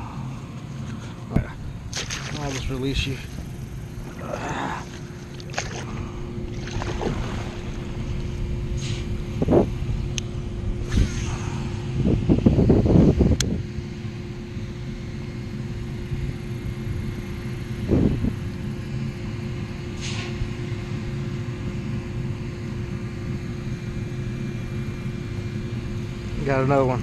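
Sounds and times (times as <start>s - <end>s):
faint steady hum: 0.0s - 27.0s
wind rumbling on microphone: 1.4s - 14.0s, 17.0s - 18.7s.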